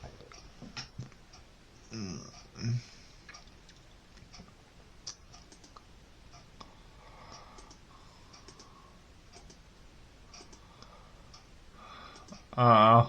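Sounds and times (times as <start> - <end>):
computer keyboard clicking: 5.4 - 5.8, 8.4 - 8.7.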